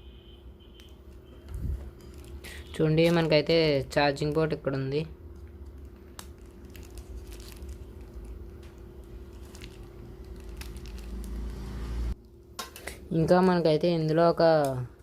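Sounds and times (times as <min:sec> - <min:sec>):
faint hum: 0:00.0 - 0:15.0
packaging crinkling: 0:01.8 - 0:03.3, 0:05.4 - 0:12.0.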